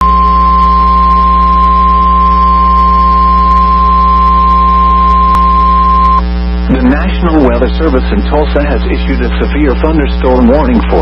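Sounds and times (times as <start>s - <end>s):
steady alarm tone: 0.0s - 6.7s
low receiver hum: 0.0s - 11.0s.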